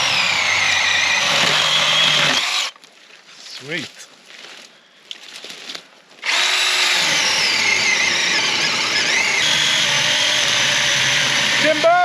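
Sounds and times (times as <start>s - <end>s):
electric chainsaw cutting tree: 0.0s - 2.8s, 6.2s - 12.0s.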